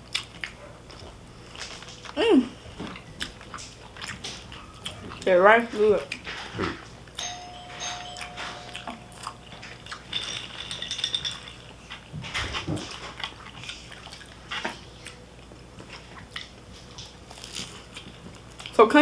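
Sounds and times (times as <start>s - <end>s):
chewing: 0.0s - 5.3s, 11.4s - 18.8s.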